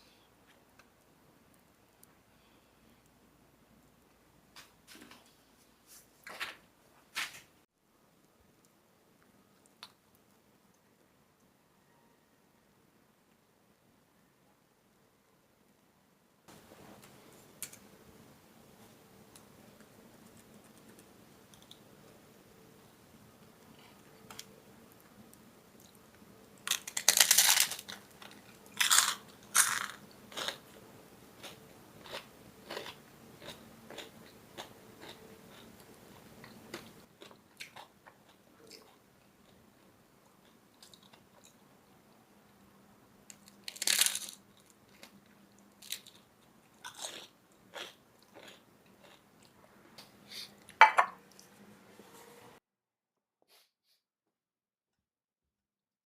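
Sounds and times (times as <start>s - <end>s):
faint steady hum: 0.0s - 7.0s, 7.8s - 52.6s
crunchy food being chewed: 25.7s - 30.8s, 31.4s - 39.6s, 40.2s - 41.6s, 43.3s - 51.5s.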